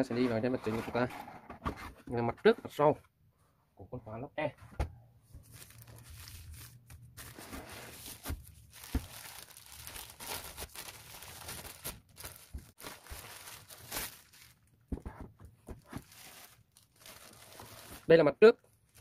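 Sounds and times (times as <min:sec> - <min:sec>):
packaging rustling and crinkling: 0:05.4 - 0:14.8, 0:15.6 - 0:19.0.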